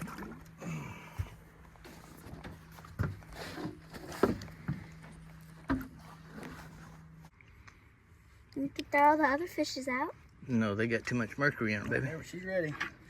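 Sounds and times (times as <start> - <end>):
steady low hum: 0.0 - 10.8
knocks and thumps of handling: 1.2 - 6.1.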